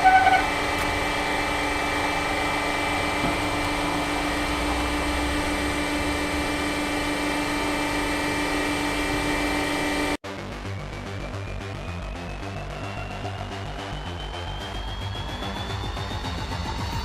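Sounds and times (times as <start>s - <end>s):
hydraulic pump motor humming: 0.0s - 10.2s.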